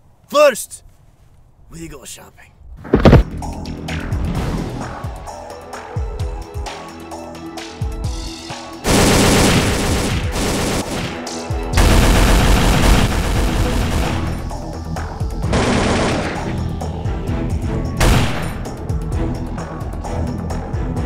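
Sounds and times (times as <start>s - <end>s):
music: 3.2s - 21.0s
rapid machine gun fire: 8.8s - 14.5s, 15.5s - 16.5s, 18.0s - 18.6s.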